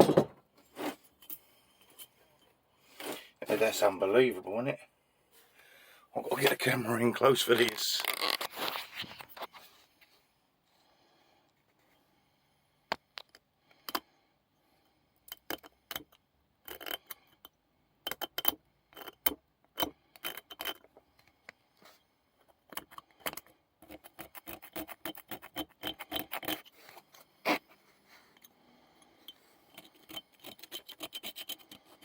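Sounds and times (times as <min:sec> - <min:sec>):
hand tool scraping metal: 0:22.9 - 0:32.0.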